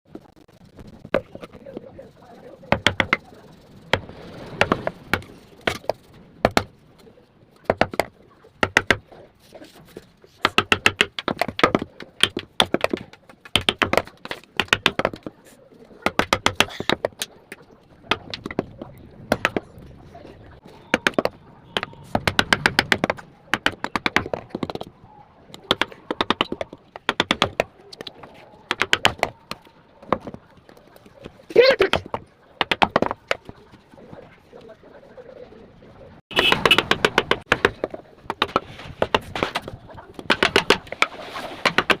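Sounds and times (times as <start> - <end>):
sharp clicks and taps: 2.7 - 3.3, 10.4 - 15.3, 16.0 - 19.7, 20.9 - 24.9, 25.5 - 30.4, 36.4 - 40.9.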